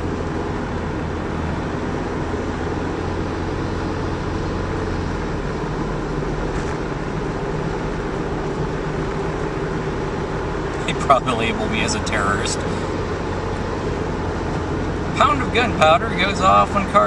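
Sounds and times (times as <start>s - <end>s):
car interior road and engine noise: 0.0s - 17.0s.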